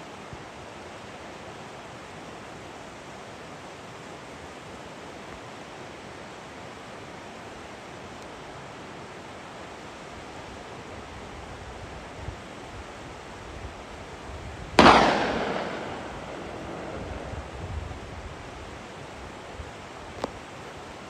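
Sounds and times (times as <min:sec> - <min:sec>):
steady background noise: 0:00.0 - 0:21.0
gunshot crack: 0:14.8 - 0:17.6.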